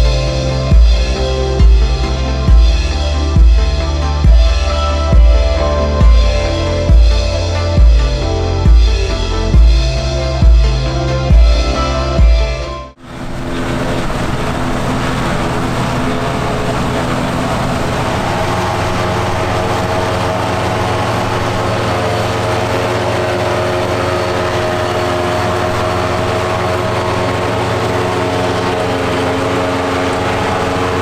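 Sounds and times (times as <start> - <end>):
background music with drums: 0.0 - 12.8
engine running steadily: 0.0 - 31.0.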